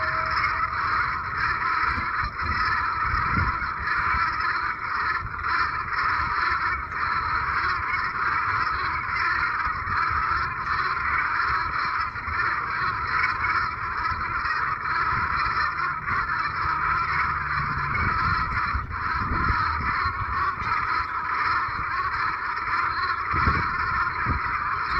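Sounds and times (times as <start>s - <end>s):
flock of geese honking: 0.0s - 24.9s
low rumble: 15.0s - 20.6s.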